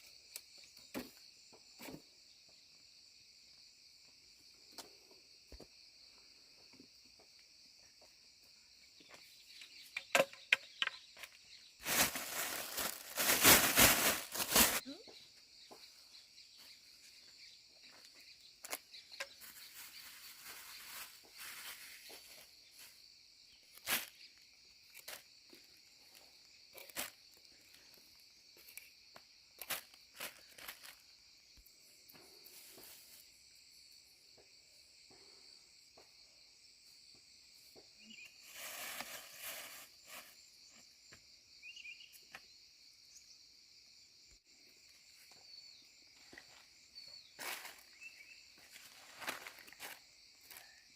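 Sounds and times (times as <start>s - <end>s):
insect chorus buzzing: 0.0s - 50.9s
rustle: 11.6s - 14.9s, 19.2s - 23.0s, 38.2s - 40.8s.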